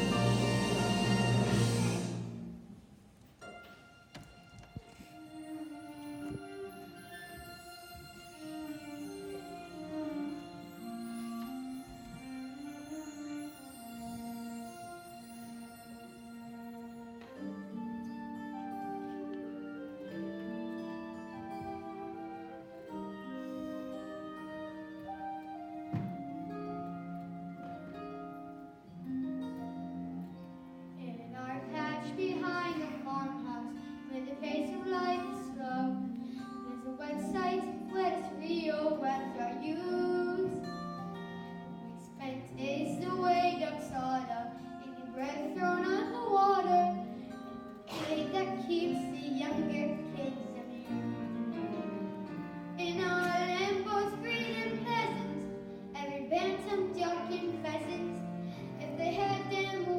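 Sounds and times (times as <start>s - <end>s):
children singing: 0.0s - 2.0s, 47.9s - 52.3s
instrumental accompaniment: 0.0s - 59.9s.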